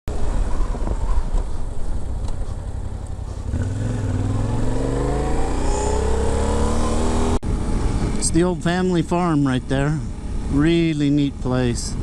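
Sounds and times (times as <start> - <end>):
low road rumble: 0.1 - 12.0
motorcycle engine accelerating: 1.9 - 10.6.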